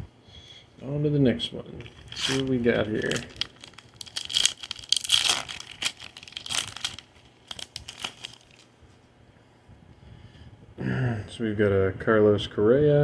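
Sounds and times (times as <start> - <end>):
wrapper crinkling and tearing: 1.8 - 8.7.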